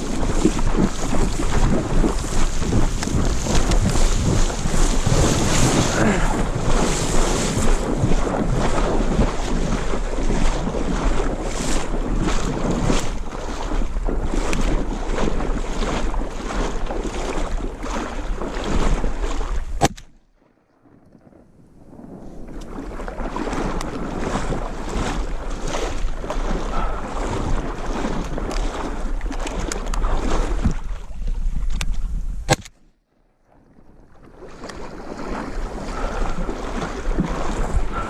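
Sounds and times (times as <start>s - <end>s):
wind buffeting microphone: 0.0s - 20.0s, 20.8s - 32.7s, 33.7s - 38.0s
click: 31.7s - 32.8s.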